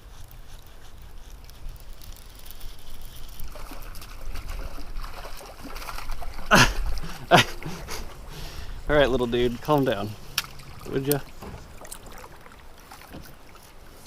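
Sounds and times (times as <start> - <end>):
water trickling and splashing: 0.0 - 14.0
sharp water splash: 3.5 - 7.9, 10.2 - 13.7.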